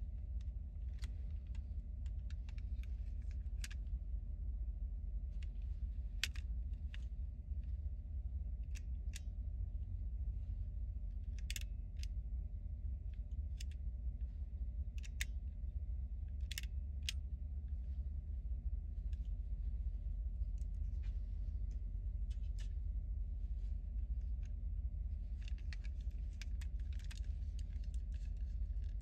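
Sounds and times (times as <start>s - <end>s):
steady low hum: 0.0s - 29.0s
plastic toy parts clicking: 6.2s - 6.4s, 11.3s - 12.1s, 15.0s - 15.4s, 16.4s - 17.2s, 25.4s - 29.0s.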